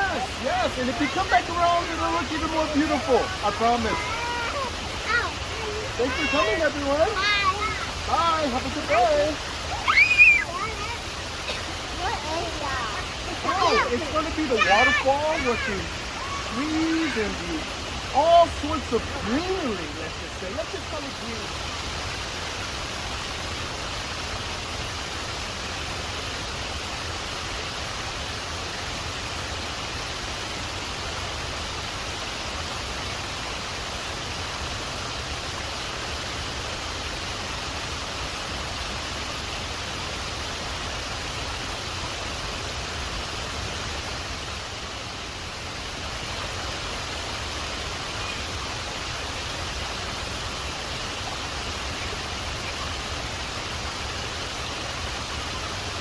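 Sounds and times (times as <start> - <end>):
waterfall roaring: 0.0 - 56.0.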